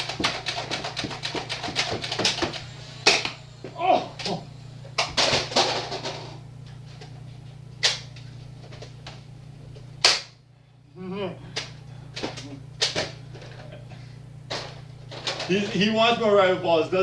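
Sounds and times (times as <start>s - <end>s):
steady low hum: 0.0s - 17.0s
person exclaiming: 3.8s - 4.5s.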